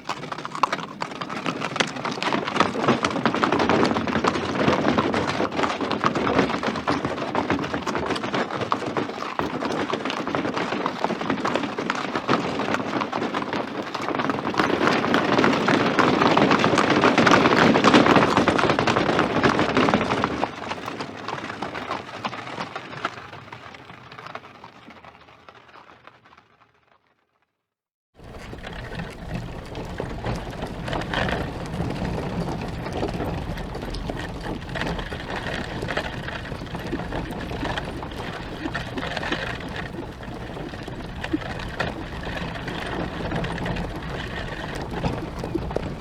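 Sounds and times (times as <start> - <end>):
horses galloping hoofbeats: 0.0 - 27.2, 28.2 - 46.0.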